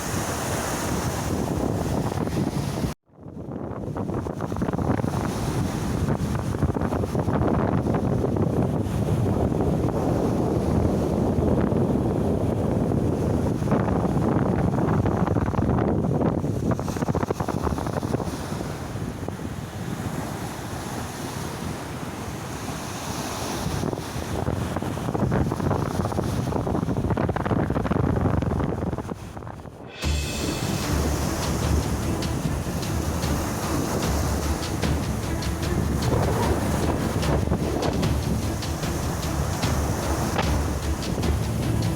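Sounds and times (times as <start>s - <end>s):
surf washing onto shore: 0.0s - 3.0s, 28.5s - 41.9s
wind buffeting microphone: 0.0s - 41.9s.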